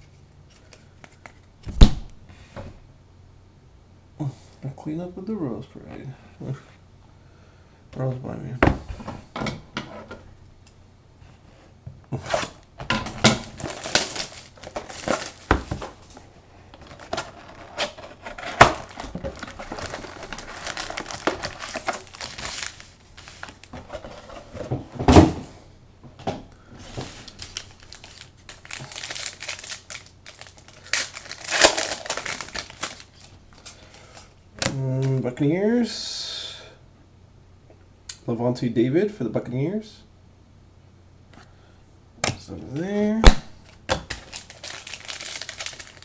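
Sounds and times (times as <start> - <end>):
plastic wrappers crinkling and tearing: 13.0 - 24.1, 26.9 - 34.3, 43.6 - 46.0.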